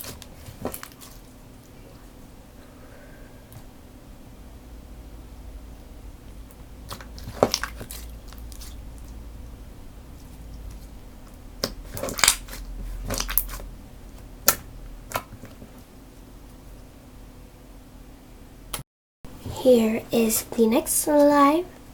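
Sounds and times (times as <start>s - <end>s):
slime crackling and popping: 6.8s - 9.1s, 11.6s - 13.7s.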